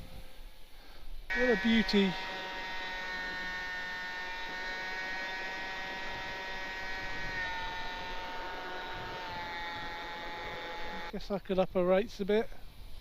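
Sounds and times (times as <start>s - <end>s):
model plane motor whine: 1.3s - 11.1s.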